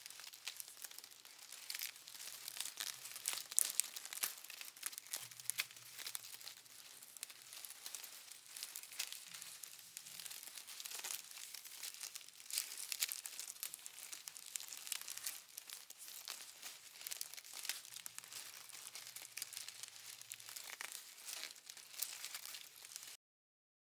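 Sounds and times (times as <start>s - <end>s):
paper crumpling: 0.0s - 23.2s.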